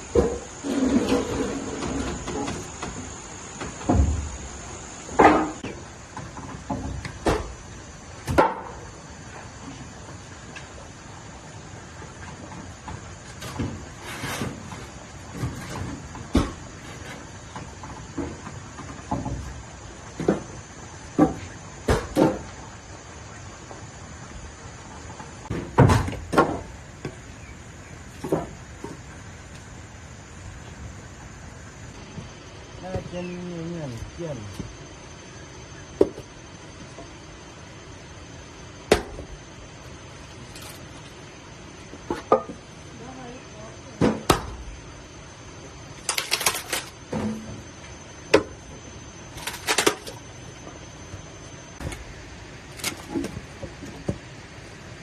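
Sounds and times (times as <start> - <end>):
steady background hiss: 0.0 - 55.0
dry wood cracking and knocking: 46.0 - 47.0.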